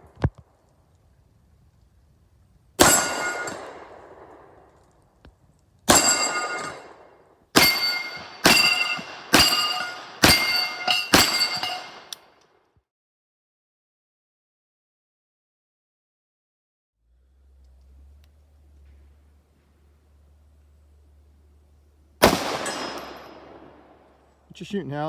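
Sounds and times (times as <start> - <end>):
gunshots with metallic ring: 2.8 - 4.6, 5.9 - 12.1, 22.2 - 24.3.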